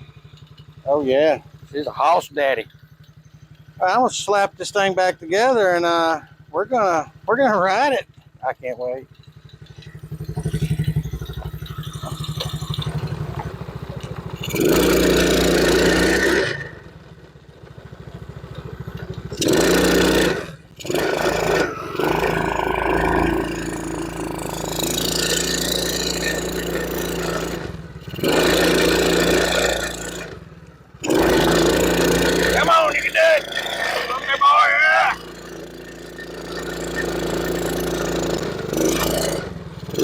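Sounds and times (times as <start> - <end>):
small engine revving: 8.9 - 40.0.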